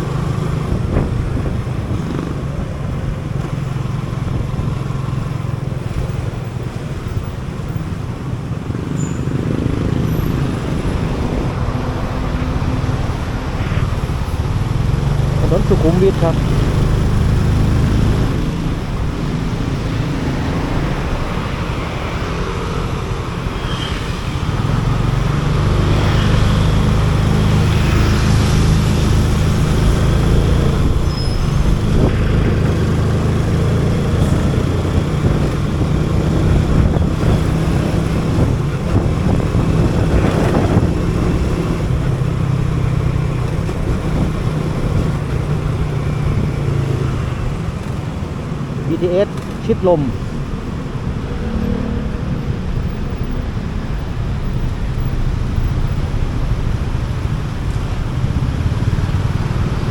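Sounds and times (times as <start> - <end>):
motorcycle engine running: 0.0 - 7.3, 28.3 - 54.3
traffic noise: 0.0 - 59.9.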